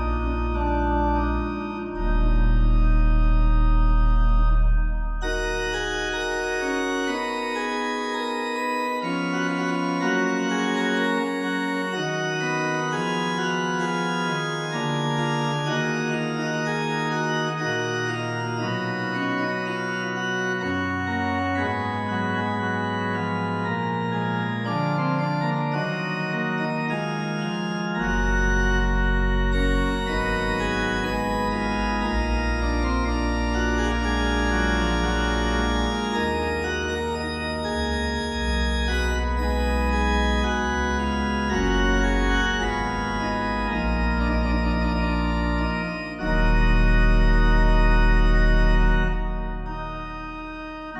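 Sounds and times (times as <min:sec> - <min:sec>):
deep bass notes: 0:00.0 - 0:07.6
organ playing sustained chords: 0:00.0 - 0:50.9.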